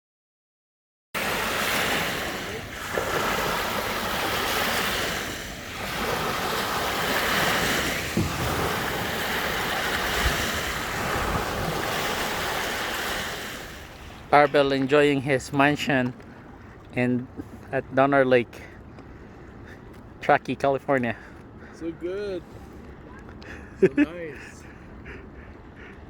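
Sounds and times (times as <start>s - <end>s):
rushing wind: 1.2s - 14.4s
lake water: 1.2s - 26.0s
wind buffeting microphone: 1.5s - 15.3s.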